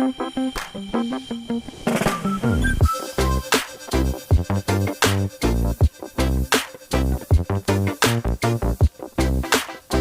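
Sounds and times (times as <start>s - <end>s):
bouncy pitched background music: 0.0s - 10.0s
falling pitch slide: 0.2s - 4.1s.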